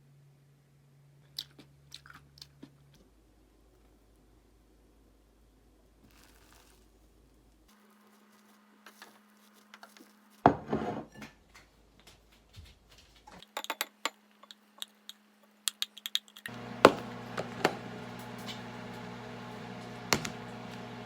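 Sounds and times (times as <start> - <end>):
dishes and utensils clinking: 10.5 - 12.3
appliance hum: 16.5 - 21.0.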